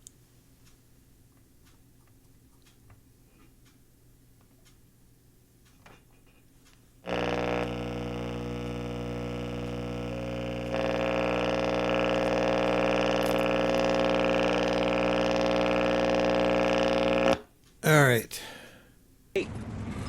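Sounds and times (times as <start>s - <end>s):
faint clicks: 0.0s - 3.8s, 4.4s - 4.8s
speaker hum-buzz: 7.0s - 18.7s.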